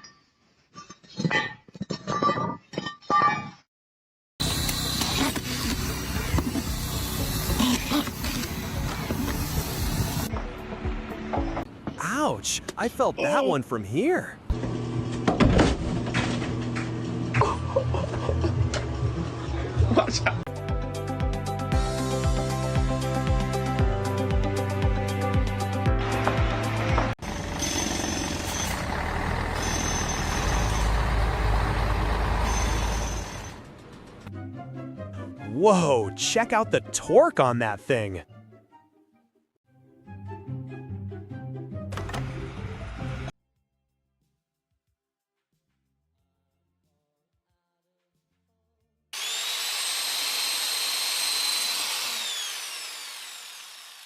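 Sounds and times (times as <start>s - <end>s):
power tool motor whining: 4.4s - 10.3s, 49.2s - 54.0s
heavy machinery engine rumbling: 27.2s - 34.1s.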